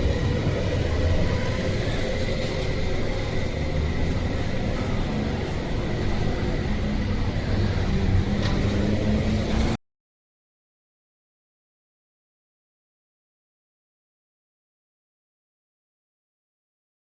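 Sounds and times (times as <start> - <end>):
low rumble of trains and traffic: 0.0 - 9.8.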